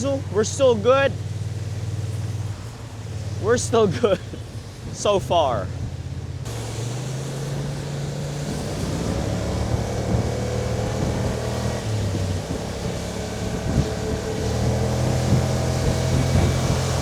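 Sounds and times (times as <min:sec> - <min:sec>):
wind rushing over microphone: 0:01.8 - 0:17.0
scooter engine running: 0:05.9 - 0:17.0.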